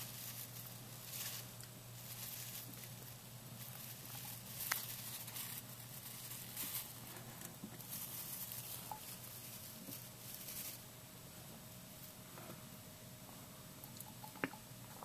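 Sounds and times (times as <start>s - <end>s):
hamster rustling in bedding: 0.0s - 11.2s.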